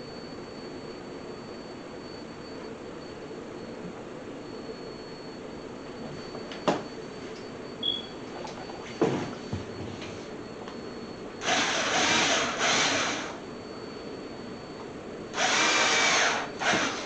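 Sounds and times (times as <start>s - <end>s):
power drill running: 11.4s - 13.4s, 15.3s - 17.0s.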